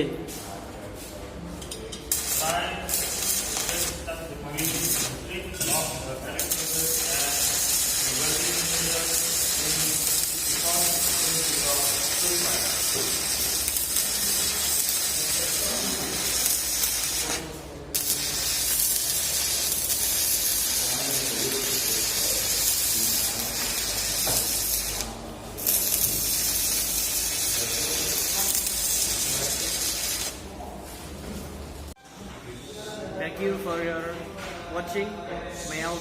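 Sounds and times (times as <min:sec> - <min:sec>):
welding arc crackling: 0:02.1 - 0:30.5.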